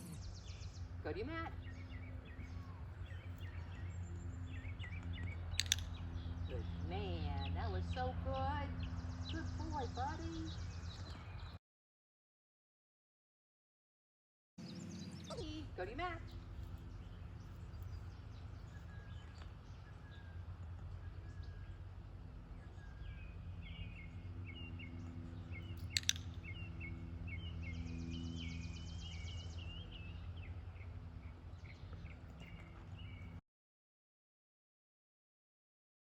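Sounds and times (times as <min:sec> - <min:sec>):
birds chirping: 0:00.0 - 0:11.6, 0:14.6 - 0:33.4
steady low hum: 0:00.0 - 0:11.6, 0:14.6 - 0:33.4
sharp click: 0:05.5 - 0:06.0, 0:25.8 - 0:26.6.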